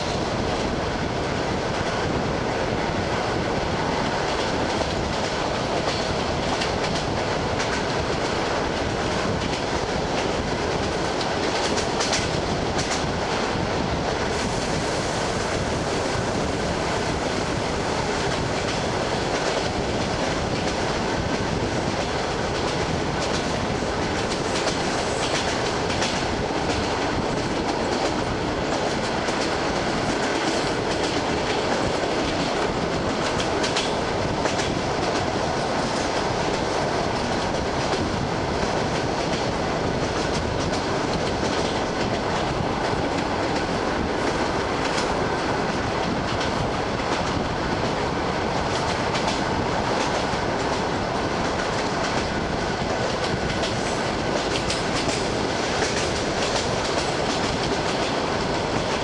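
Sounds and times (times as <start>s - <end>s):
train rolling noise: 0.0s - 59.0s
train wheels clattering over rail joints: 14.2s - 59.0s.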